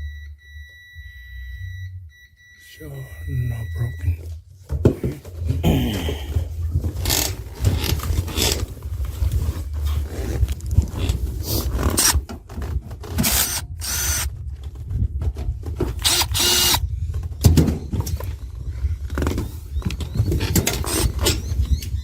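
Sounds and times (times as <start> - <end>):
steady low rumble: 0.0 - 4.6
short whirring bursts: 13.2 - 14.3, 16.0 - 16.8.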